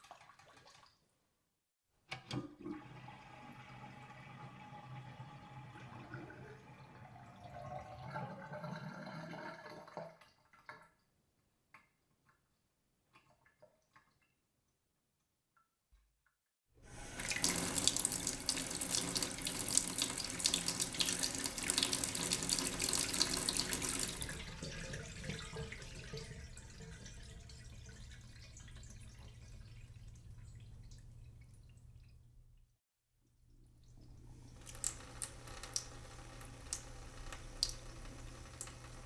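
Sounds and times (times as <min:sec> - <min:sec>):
running water: 0:16.9 - 0:32.3, 0:33.8 - 0:39.0.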